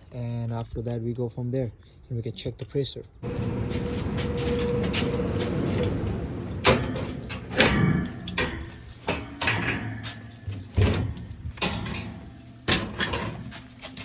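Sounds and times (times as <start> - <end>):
machine running: 3.2 - 8.9
faint hum: 3.2 - 9.4
sharp clunks: 3.2 - 12.1.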